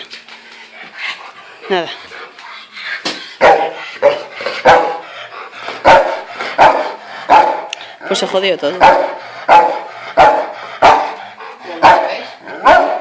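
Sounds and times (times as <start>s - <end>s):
dog barking: 3.4s - 5.0s, 5.8s - 7.7s, 8.8s - 11.2s, 11.8s - 13.0s.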